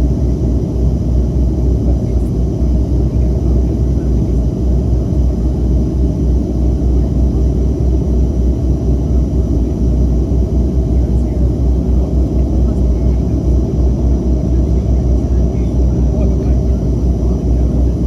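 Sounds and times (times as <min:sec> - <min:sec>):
propeller aircraft engines droning: 0:00.0 - 0:18.0.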